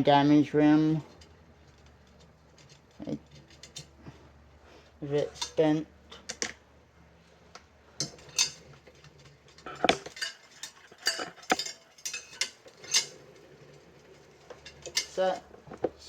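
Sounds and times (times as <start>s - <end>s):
metal spokes clinking: 0.9s - 4.1s, 8.0s - 15.7s.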